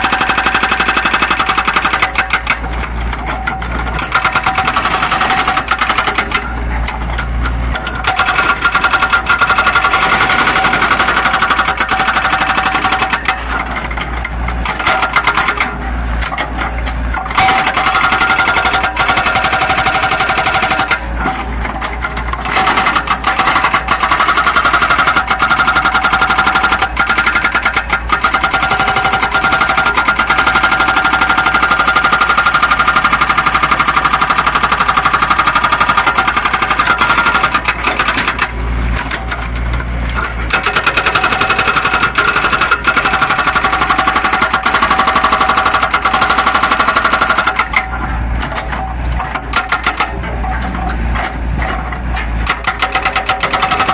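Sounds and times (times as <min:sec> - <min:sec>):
excavator diesel engine running hard: 0:00.0 - 0:53.9.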